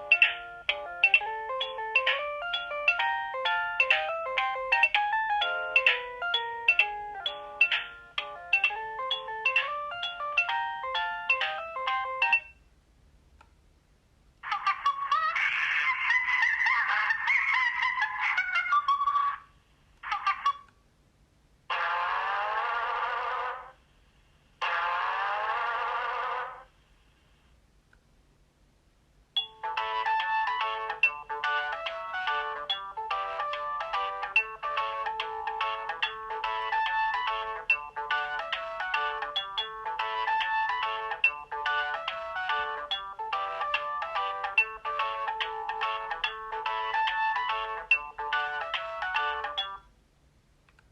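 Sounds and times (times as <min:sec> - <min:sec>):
polyphonic phone ringtone: 0:00.0 - 0:12.6, 0:29.4 - 0:49.9.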